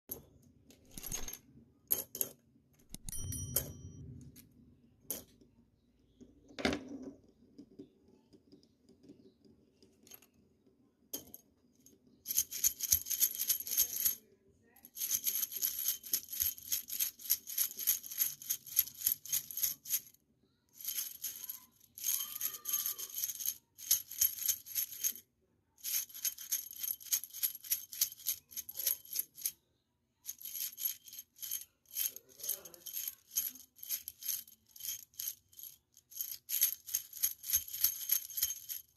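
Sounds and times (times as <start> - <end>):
hand rattle shaking and jingling: 0.9 - 2.3, 12.3 - 14.2, 14.9 - 20.1, 20.8 - 25.2, 25.8 - 29.5, 30.3 - 38.9.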